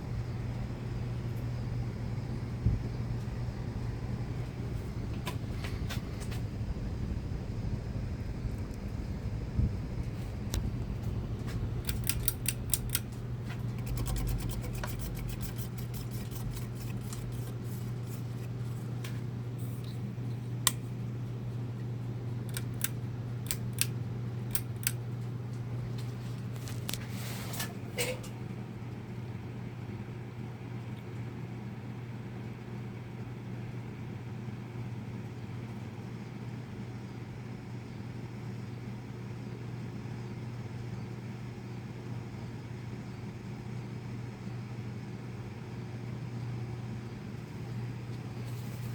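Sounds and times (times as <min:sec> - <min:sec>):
ceiling fan motor hum: 0:00.0 - 0:48.9
sharp clicks: 0:11.8 - 0:17.4, 0:22.5 - 0:25.0.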